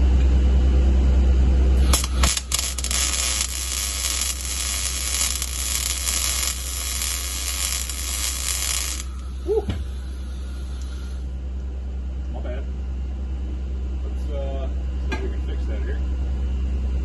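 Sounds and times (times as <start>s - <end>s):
low steady hum: 0.0s - 17.0s
welding arc striking clicks: 1.8s - 9.2s
welding arc hissing and crackling: 1.8s - 11.2s.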